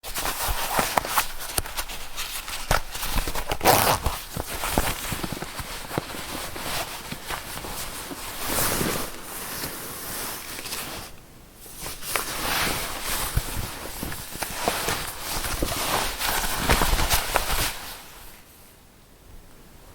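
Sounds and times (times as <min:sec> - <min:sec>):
zipper zipping and unzipping: 0:03.4 - 0:04.3.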